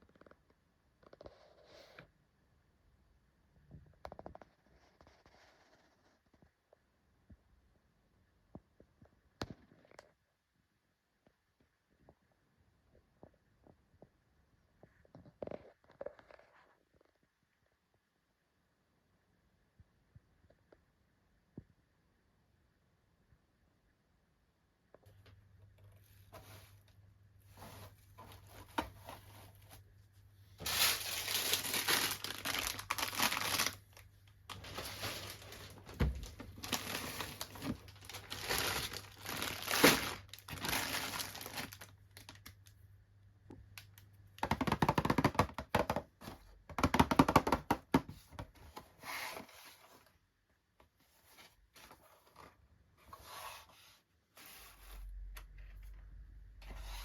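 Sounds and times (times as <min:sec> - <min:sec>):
cardboard and plastic tearing: 0:30.6 - 0:42.4.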